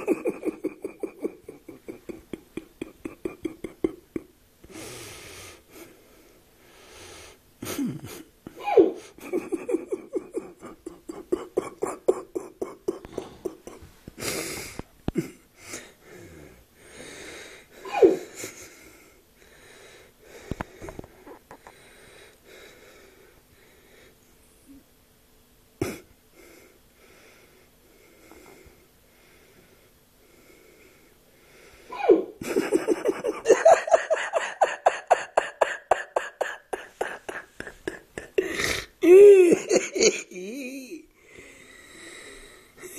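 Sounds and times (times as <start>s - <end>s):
heavy breathing in sleep: 4.6s - 7.4s, 15.6s - 17.8s, 18.6s - 24.2s, 38.3s - 39.0s, 41.2s - 42.9s
man hiccuping: 11.1s - 13.8s.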